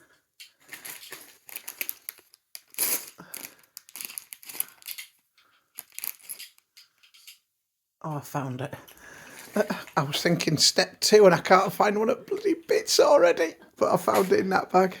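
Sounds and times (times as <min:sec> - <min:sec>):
bag rustling and crinkling: 0:00.5 - 0:06.6.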